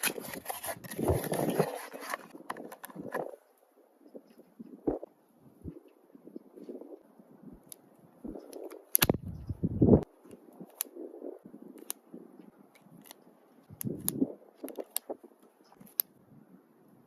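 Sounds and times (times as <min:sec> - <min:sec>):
revolver metallic clicks: 0:08.4 - 0:09.5.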